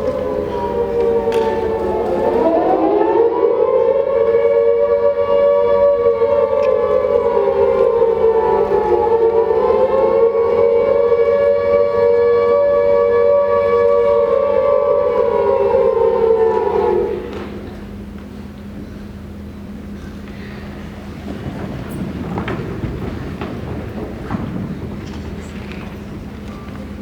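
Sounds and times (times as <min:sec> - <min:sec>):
air-raid siren wailing: 0:00.0 - 0:18.2.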